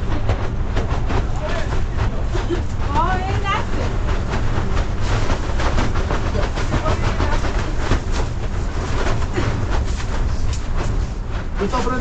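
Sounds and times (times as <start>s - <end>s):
heavy rain falling: 6.0s - 10.5s.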